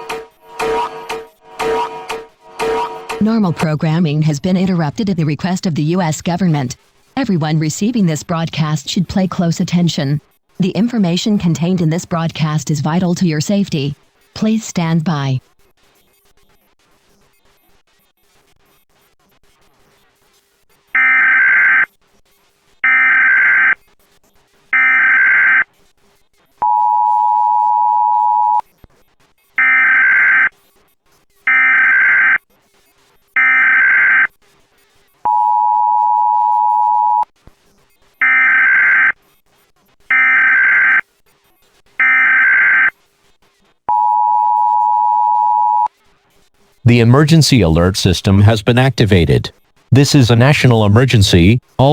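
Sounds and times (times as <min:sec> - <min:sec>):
two-tone attention signal: 0:00.0 - 0:03.7, 0:26.6 - 0:28.6, 0:35.3 - 0:37.2, 0:42.0 - 0:42.9, 0:43.9 - 0:45.9.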